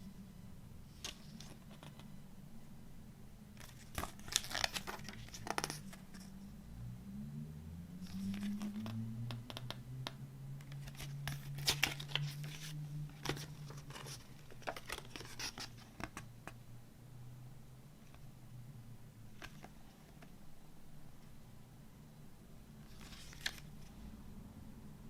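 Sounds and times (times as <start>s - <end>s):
paper and plastic rustling: 3.6s - 6.3s, 10.8s - 16.3s, 22.8s - 23.9s.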